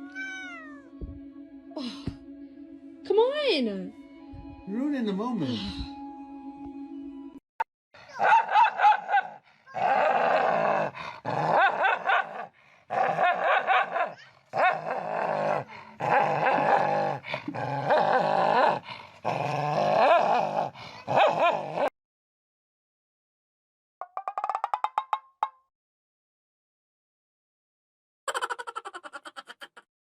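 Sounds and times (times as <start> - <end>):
dog growl-whining: 9.7 - 21.9.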